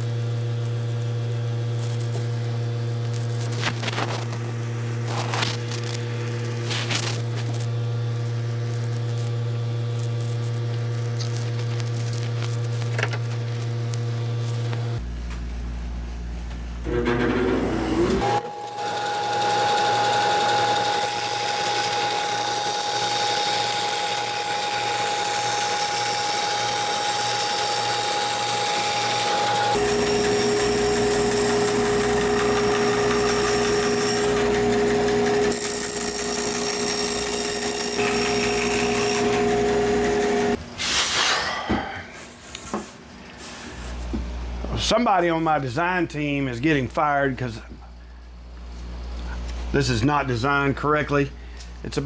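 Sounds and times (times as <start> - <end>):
power tool motor whine: 16.9 - 40.6.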